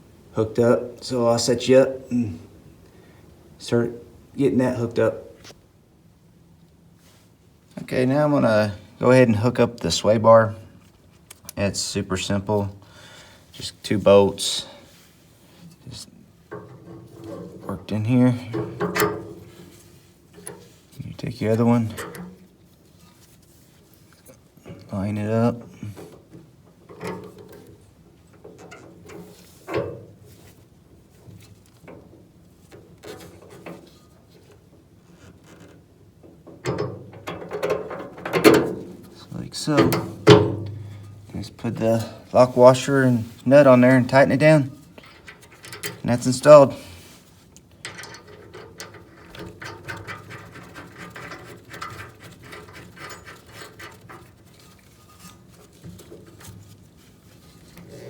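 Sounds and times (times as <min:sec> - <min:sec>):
metal hardware knocking and clicking: 0:18.4 - 0:19.8, 0:26.0 - 0:30.1, 0:35.4 - 0:39.2, 0:39.8 - 0:41.3, 0:45.0 - 0:46.0, 0:47.8 - 0:54.9.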